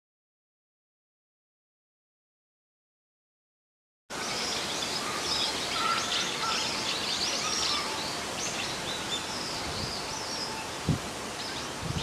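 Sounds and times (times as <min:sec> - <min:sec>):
birds chirping: 0:04.1 - 0:12.0
steady outdoor hiss: 0:04.1 - 0:12.0.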